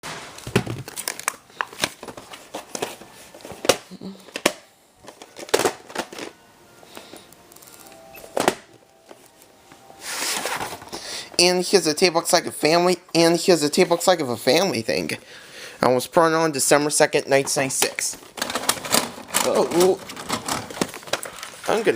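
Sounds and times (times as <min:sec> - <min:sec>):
tape case clicks and rustles: 0:00.4 - 0:09.8, 0:17.7 - 0:21.9.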